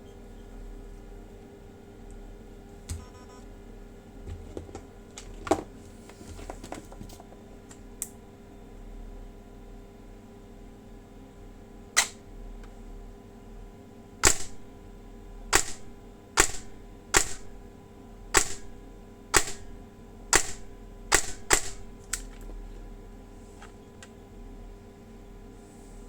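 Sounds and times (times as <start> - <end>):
airsoft gun firing single shots: 14.2 - 14.7, 15.6 - 17.6, 18.4 - 21.9.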